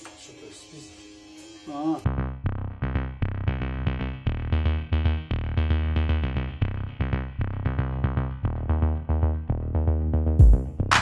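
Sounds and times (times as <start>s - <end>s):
synthesizer chords: 0.5s - 11.0s
drum-machine beat: 10.4s - 11.0s.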